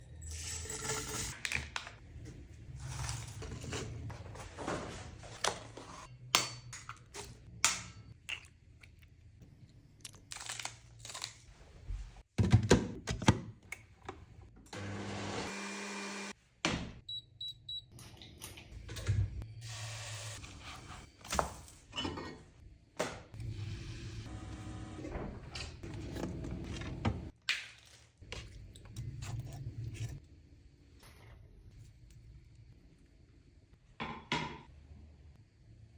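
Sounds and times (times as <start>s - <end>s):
blender running: 14.7s - 16.4s, 23.4s - 25.0s.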